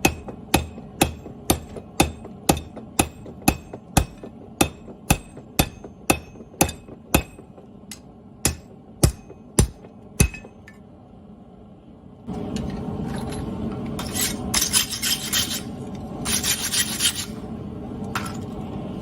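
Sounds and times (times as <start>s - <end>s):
hammer on steel anvil: 0.0s - 10.8s
metallic clinking and scraping: 12.6s - 17.4s.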